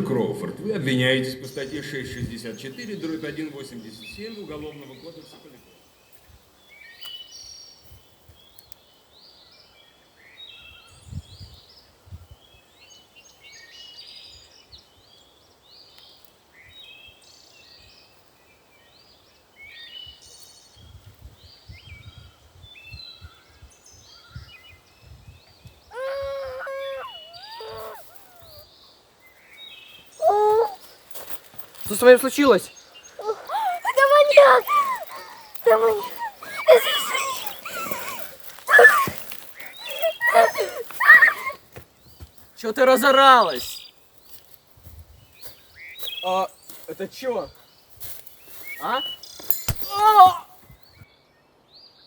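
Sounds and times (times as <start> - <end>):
songbirds chirping and singing: 1.5 - 52.0
loud wavering pitched cry: 25.9 - 28.6, 30.2 - 30.8.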